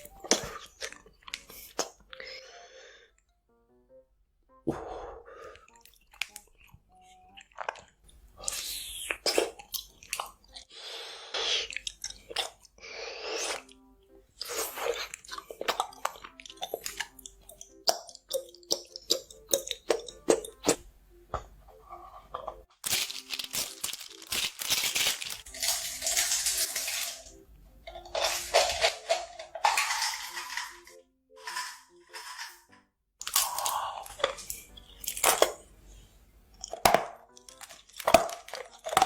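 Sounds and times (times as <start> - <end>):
faint background music: 0.0 - 39.0
crunchy chewing: 5.5 - 10.8, 11.4 - 20.8, 36.6 - 39.0.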